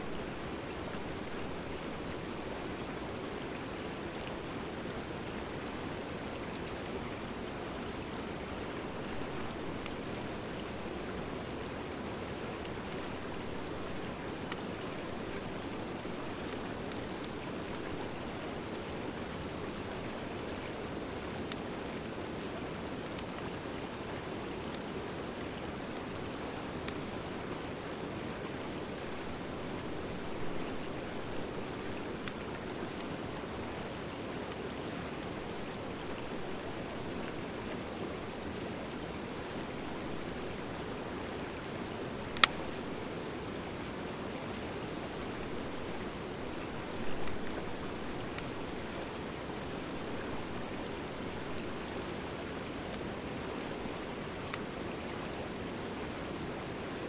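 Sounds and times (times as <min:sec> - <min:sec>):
wood fire crackling: 0:00.1 - 0:23.6, 0:28.8 - 0:43.9, 0:45.1 - 0:51.8
fire popping: 0:42.3 - 0:42.9.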